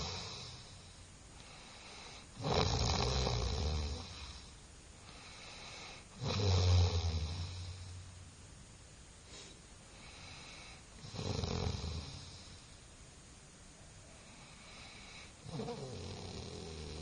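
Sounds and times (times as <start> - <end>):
person snoring loudly: 0.0 - 0.7, 1.9 - 4.5, 6.1 - 7.9, 11.0 - 12.5, 14.6 - 17.0.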